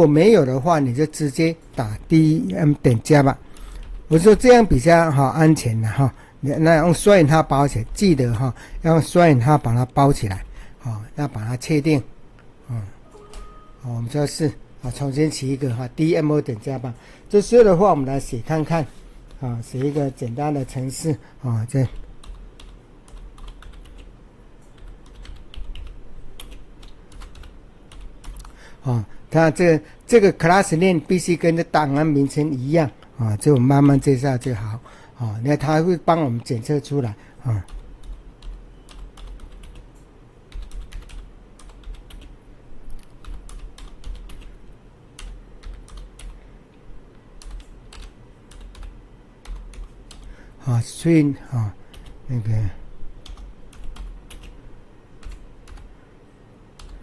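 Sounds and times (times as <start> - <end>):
typing on a keyboard: 21.9 - 24.1, 24.7 - 28.6, 37.6 - 42.3, 43.0 - 44.6, 45.2 - 46.4, 47.4 - 50.3, 53.2 - 54.6, 55.2 - 55.9, 56.8 - 57.0.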